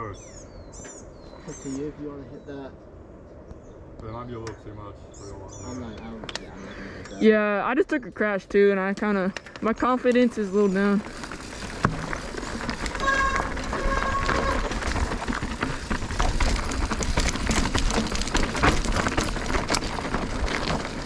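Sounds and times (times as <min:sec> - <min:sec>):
bikes clicking and rustling on rocks: 0:08.2 - 0:21.0
wind rumbling on microphone: 0:09.2 - 0:21.0.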